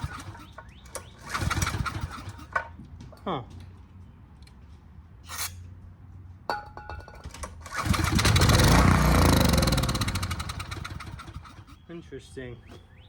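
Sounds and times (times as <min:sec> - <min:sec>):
small generator engine running: 0:00.0 - 0:02.7, 0:07.6 - 0:11.8.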